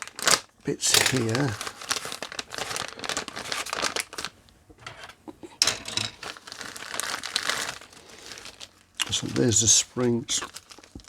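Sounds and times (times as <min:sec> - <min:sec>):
plastic packaging crinkling: 0:00.0 - 0:05.0, 0:05.7 - 0:11.0.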